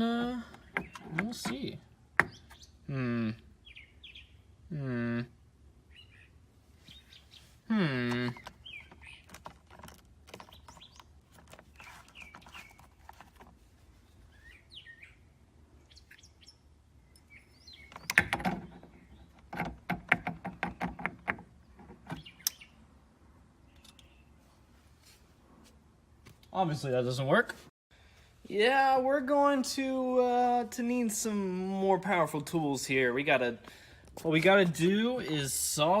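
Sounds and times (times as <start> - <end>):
birds chirping: 0.0 - 4.7, 5.7 - 24.8.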